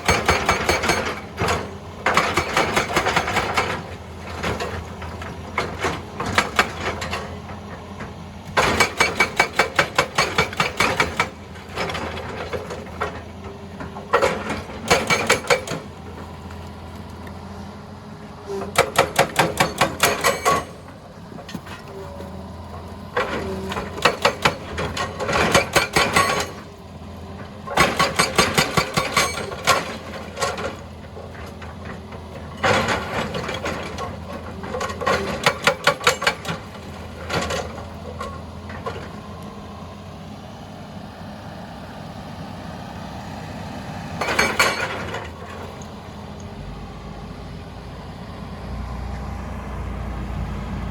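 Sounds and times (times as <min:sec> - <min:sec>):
hydraulic breaker hammering rock: 0:00.0 - 0:07.7, 0:08.4 - 0:16.2, 0:18.5 - 0:22.2, 0:23.1 - 0:26.7, 0:27.6 - 0:39.2, 0:44.2 - 0:45.6
diesel engine humming: 0:00.0 - 0:50.9.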